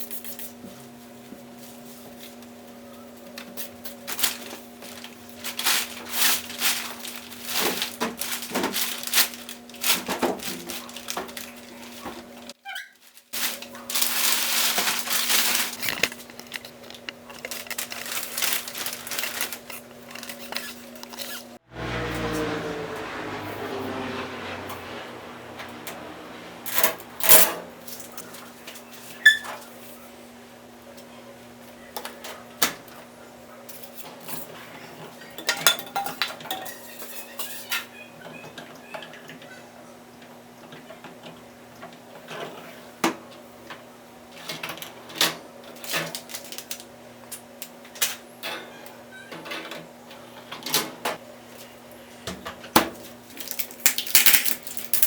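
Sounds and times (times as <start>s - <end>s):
rustling and scraping: 3.5s - 21.6s
packaging crinkling and tearing: 4.0s - 12.1s, 12.9s - 21.5s, 45.8s - 46.9s, 53.3s - 55.0s
steady hum: 13.4s - 21.6s.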